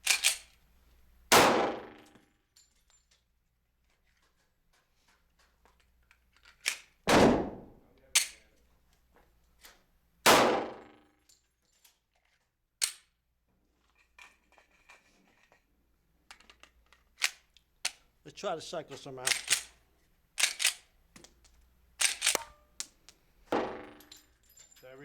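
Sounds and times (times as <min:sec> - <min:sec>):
metallic clicks of gun handling: 0:00.0 - 0:00.7, 0:02.0 - 0:07.0, 0:08.0 - 0:09.9, 0:11.2 - 0:18.2, 0:18.9 - 0:24.8
pistol shots: 0:01.3 - 0:02.0, 0:07.1 - 0:07.7, 0:10.3 - 0:10.9, 0:23.5 - 0:24.0.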